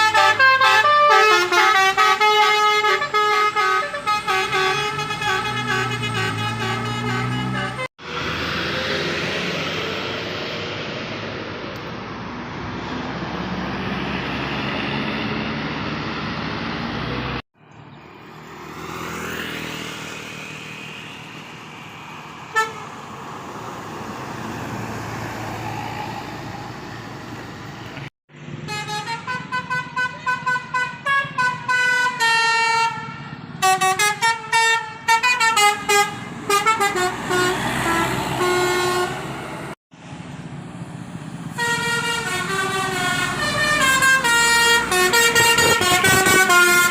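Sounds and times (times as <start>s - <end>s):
multi-tone air horn melody: 0.0s - 8.2s, 22.5s - 22.9s, 28.7s - 39.2s, 41.6s - 46.9s
bus engine: 0.0s - 46.9s
traffic noise: 0.0s - 46.9s.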